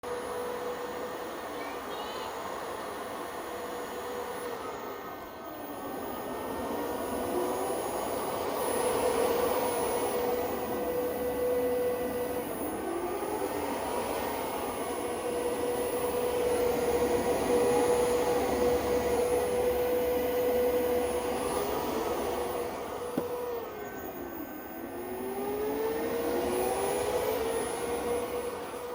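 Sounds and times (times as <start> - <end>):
cooling fan whine and whir: 0.0 - 28.9.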